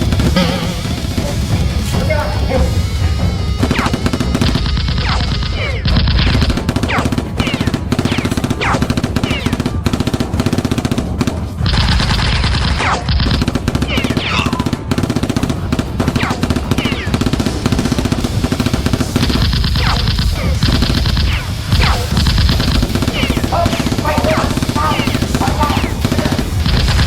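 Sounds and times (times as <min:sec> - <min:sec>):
action music with low beat: 0:00.0 - 0:27.0
automatic gunfire: 0:00.0 - 0:27.0.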